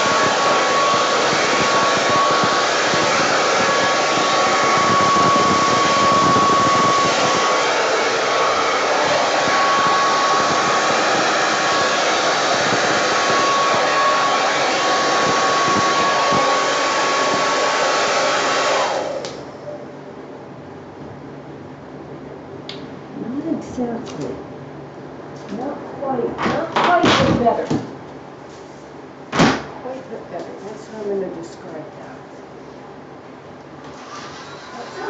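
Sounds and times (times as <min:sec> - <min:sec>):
hair dryer running: 0:00.0 - 0:19.6, 0:33.9 - 0:35.0.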